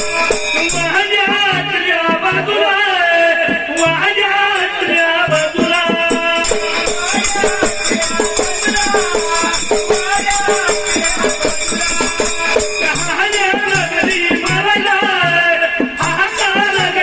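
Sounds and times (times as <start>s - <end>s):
small hand cymbals ringing: 0.0s - 1.0s, 6.4s - 14.7s
drum beat: 0.0s - 17.0s
voices singing folk melody: 0.0s - 17.0s.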